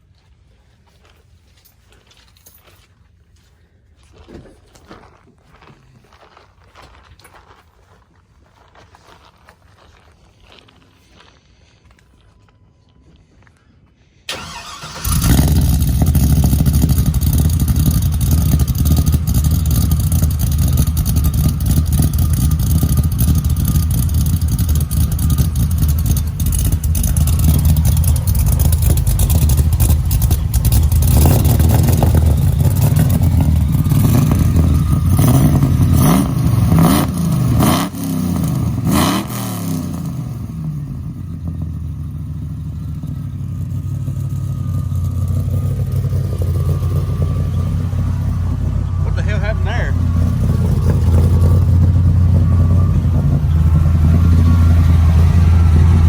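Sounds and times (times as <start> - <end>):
engine starting and idling: 14.3 - 37.7, 40.6 - 56.0
engine revving: 14.3 - 56.0.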